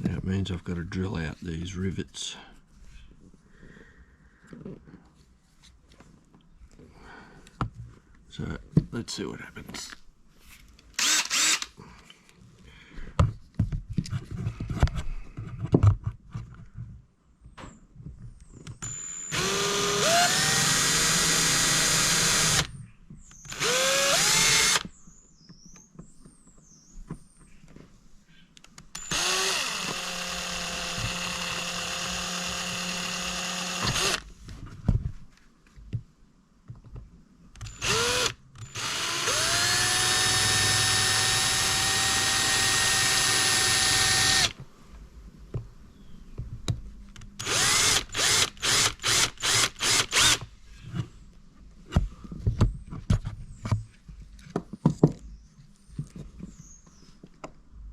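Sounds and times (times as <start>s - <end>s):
electric drill whining: 11.0s - 11.8s, 18.8s - 22.7s, 23.4s - 24.9s, 28.9s - 34.2s, 37.6s - 44.6s, 47.4s - 50.5s.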